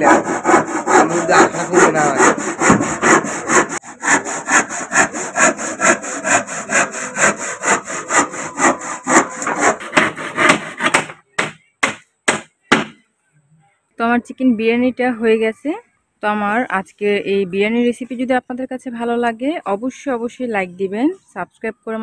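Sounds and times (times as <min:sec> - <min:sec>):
rhythmic scraping strokes: 0:00.0 - 0:11.0.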